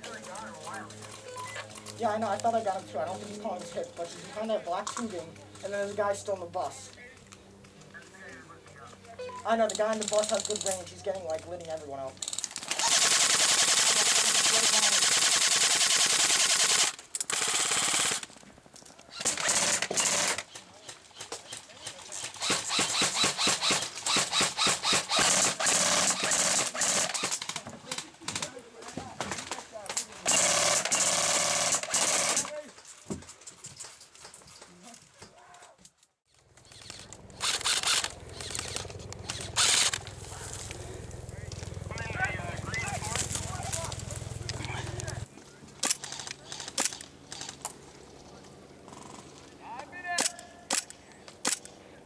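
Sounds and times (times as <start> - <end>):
airsoft rifle firing bursts: 12.6 - 18.3, 19.1 - 20.6, 22.2 - 27.6, 30.2 - 32.5, 36.7 - 40.0
steady low hum: 36.3 - 49.6.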